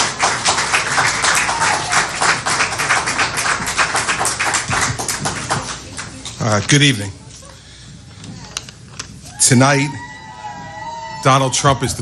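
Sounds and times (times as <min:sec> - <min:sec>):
crowd applauding: 0:00.0 - 0:06.7.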